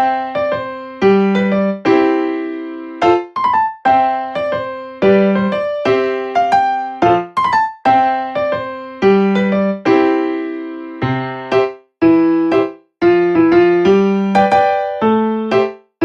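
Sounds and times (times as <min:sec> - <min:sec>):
piano melody: 0:00.0 - 0:16.0.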